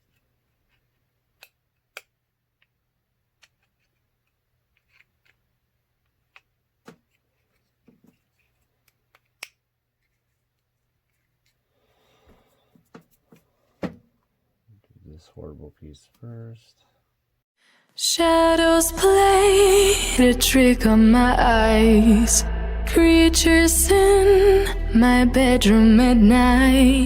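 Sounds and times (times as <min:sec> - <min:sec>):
small plastic parts clicking: 0:00.0 - 0:11.6.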